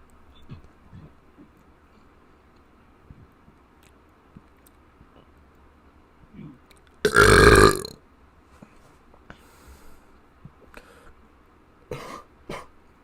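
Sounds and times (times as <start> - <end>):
person burping loudly: 7.1 - 8.0.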